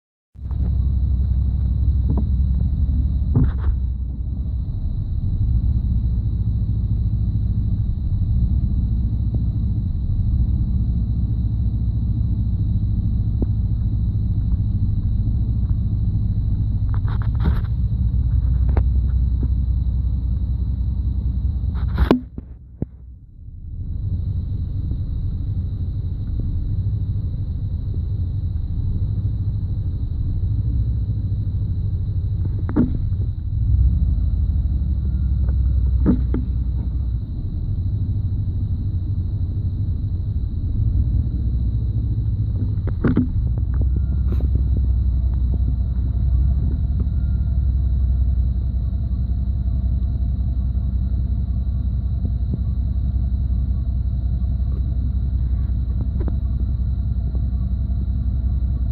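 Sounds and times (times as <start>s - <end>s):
engine misfire pops: 0.4s - 5.3s, 13.1s - 20.5s, 21.1s - 23.2s, 27.4s - 47.2s, 54.5s - 57.5s
engine idling: 0.4s - 58.9s.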